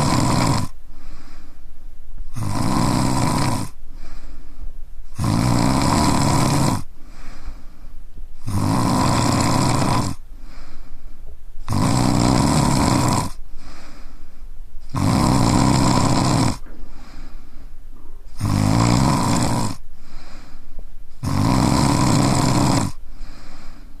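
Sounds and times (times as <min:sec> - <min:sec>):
man snoring: 0:00.0 - 0:00.8, 0:02.3 - 0:03.8, 0:05.1 - 0:06.9, 0:08.4 - 0:10.2, 0:11.6 - 0:13.4, 0:14.9 - 0:16.7, 0:18.3 - 0:20.3, 0:21.2 - 0:23.8
quiet breaths: 0:00.0 - 0:24.0.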